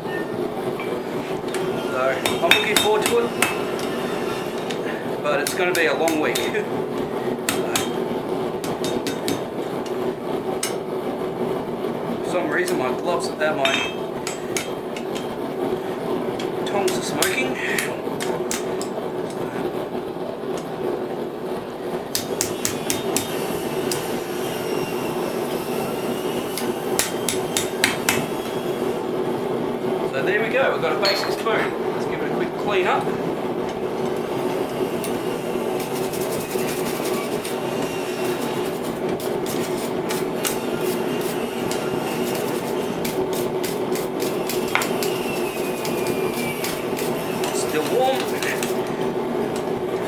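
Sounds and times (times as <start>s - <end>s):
gas forge burner roar: 0.0s - 50.0s
hammer striking hot steel: 0.1s - 11.4s, 12.2s - 19.5s, 22.0s - 29.0s, 30.3s - 31.8s, 32.6s - 49.7s
metal striking metal: 13.6s - 15.4s.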